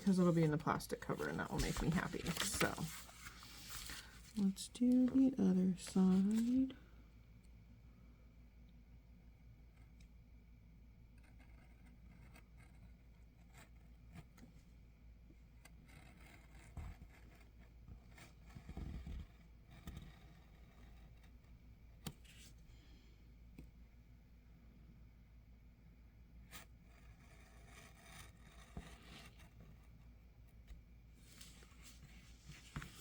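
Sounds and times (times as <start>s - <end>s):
low steady hum: 0.0s - 33.0s
plastic cover scraping and rustling: 0.1s - 4.5s.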